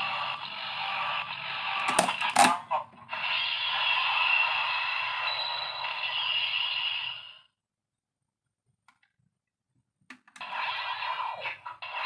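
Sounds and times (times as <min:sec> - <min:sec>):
toy electronic sound effects: 0:00.0 - 0:07.5.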